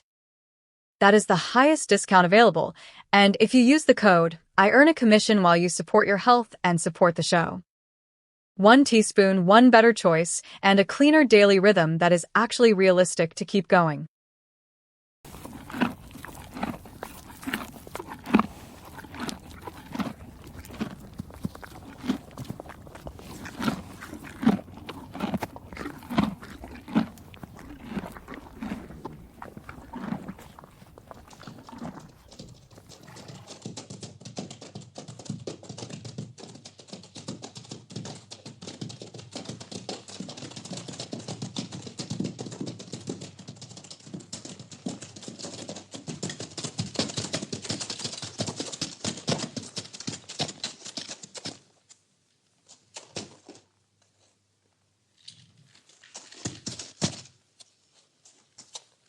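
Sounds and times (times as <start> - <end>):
horse crunching feed: 15.3 - 33.7, 55.2 - 59.0.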